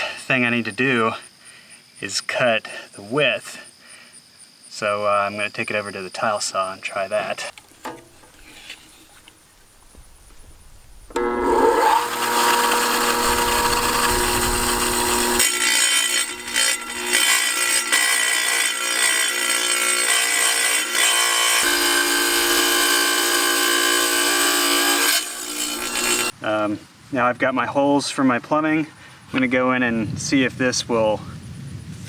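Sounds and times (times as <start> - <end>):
tile saw cutting tile: 11.1 - 26.4.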